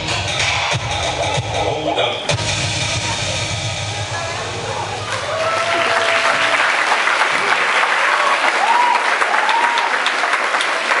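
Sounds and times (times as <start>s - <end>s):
audience applauding and cheering: 4.8s - 11.0s.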